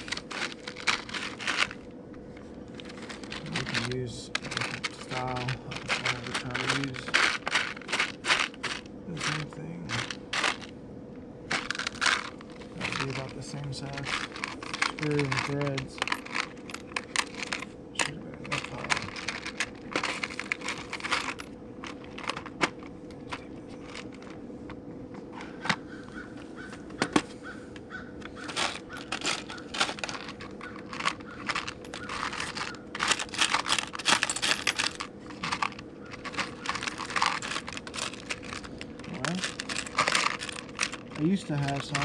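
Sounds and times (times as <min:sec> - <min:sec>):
faint steady hum: 0:00.0 - 0:42.0
metal screws clinking: 0:28.4 - 0:38.8.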